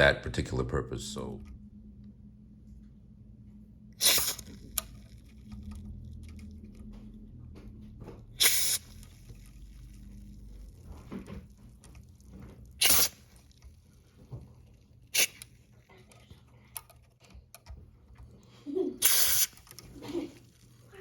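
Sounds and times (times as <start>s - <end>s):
aerosol spray hissing: 4.0s - 4.5s, 8.4s - 9.0s, 12.8s - 13.3s, 15.2s - 15.4s, 19.0s - 19.7s
small clicks and handling noises: 10.6s - 18.6s.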